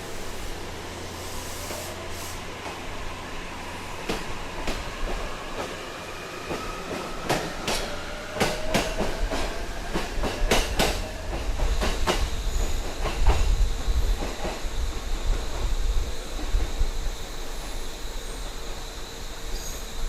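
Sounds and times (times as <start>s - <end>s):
train whine: 0.0s - 20.0s
train wheels clacking: 6.4s - 15.7s.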